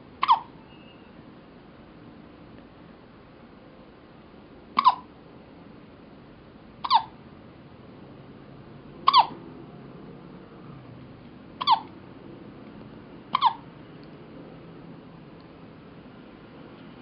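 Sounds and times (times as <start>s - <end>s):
baby hiccuping: 0.2s - 0.5s, 4.8s - 5.1s, 6.8s - 7.1s, 9.0s - 9.3s, 11.6s - 11.9s, 13.3s - 13.6s.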